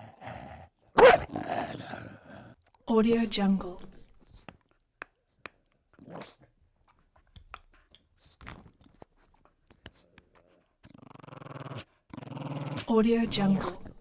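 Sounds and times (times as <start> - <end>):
dog mouth clicks: 7.2 - 9.1.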